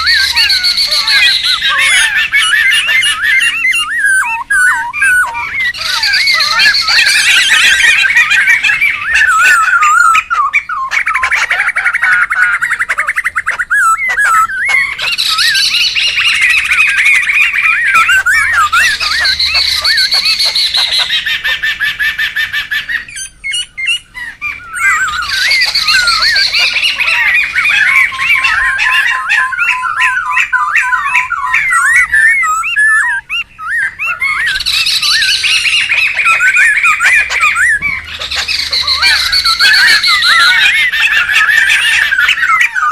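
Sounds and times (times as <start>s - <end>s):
birds chattering and squawking: 0.0s - 42.9s.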